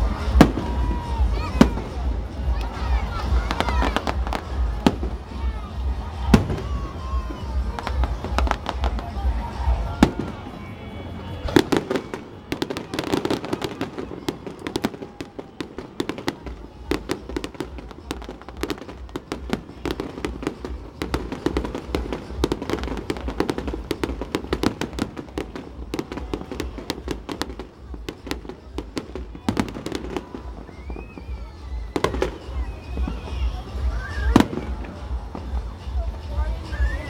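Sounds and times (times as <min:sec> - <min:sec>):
low firework booms: 0:00.0 - 0:10.6, 0:11.5 - 0:35.7
fireworks cracking and popping: 0:00.0 - 0:36.2.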